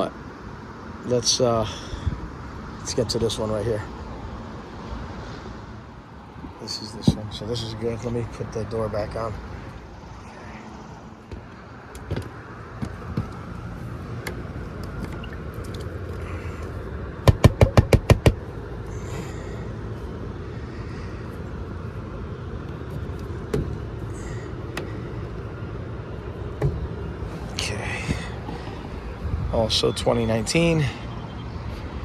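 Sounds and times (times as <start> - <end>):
air conditioning units humming: 0.0 - 32.0
sharp knocks: 17.2 - 18.4.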